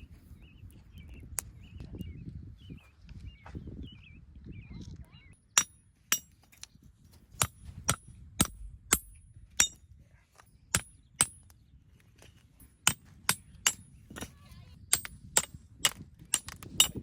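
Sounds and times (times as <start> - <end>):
hard tool striking metal: 5.6 - 6.4, 7.4 - 9.8, 10.7 - 11.5, 12.6 - 14.3, 14.9 - 17.0.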